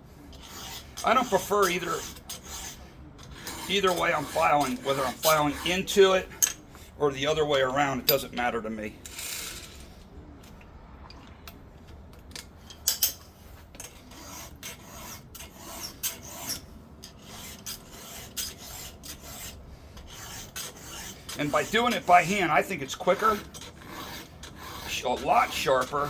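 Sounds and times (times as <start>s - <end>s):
file rasping on chainsaw chain: 0.3s - 6.2s, 13.8s - 26.0s.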